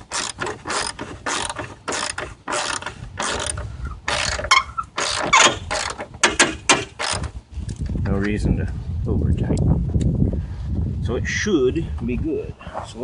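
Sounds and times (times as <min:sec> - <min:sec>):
ratchet wrench clicking: 0:00.1 - 0:06.0.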